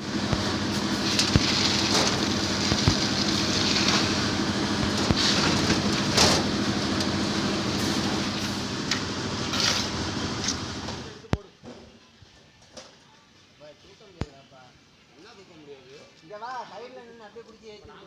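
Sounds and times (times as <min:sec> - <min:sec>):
engine-driven machinery running: 0:00.0 - 0:11.2.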